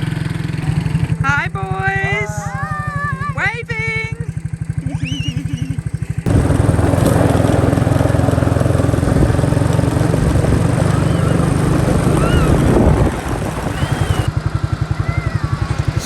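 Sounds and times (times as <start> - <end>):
quad bike engine running: 0.0 - 16.0
loud rushing noise: 6.3 - 14.9.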